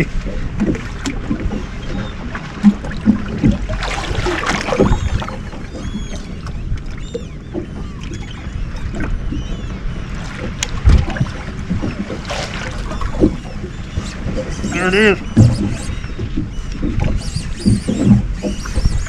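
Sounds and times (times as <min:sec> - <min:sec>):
boat engine running: 0:00.0 - 0:19.0
water splashing: 0:00.0 - 0:19.0
wind on microphone: 0:00.0 - 0:19.0
seabirds crying: 0:01.4 - 0:02.4, 0:04.3 - 0:10.2, 0:11.4 - 0:19.0.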